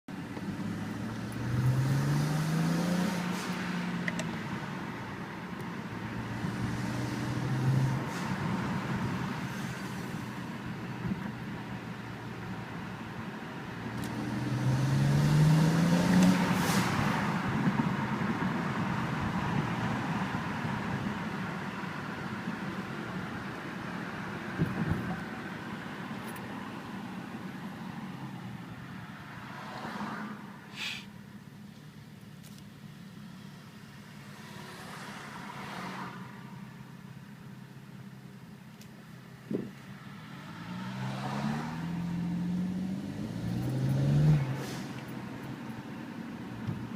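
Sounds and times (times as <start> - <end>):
car engine accelerating: 0.2 - 4.5, 13.8 - 18.2, 39.4 - 46.9
blow-off valve hiss: 30.7 - 31.2.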